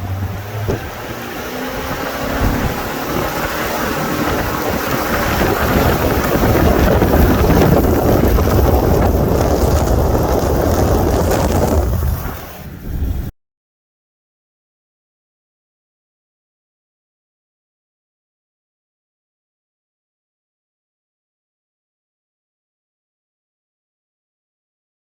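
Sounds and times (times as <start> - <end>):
storm wind buffeting microphone: 0.0 - 13.3.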